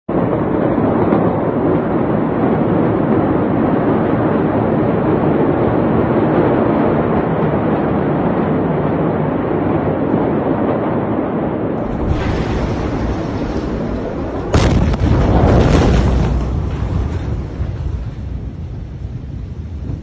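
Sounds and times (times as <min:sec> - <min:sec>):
loud rushing rumble: 0:11.6 - 0:20.0.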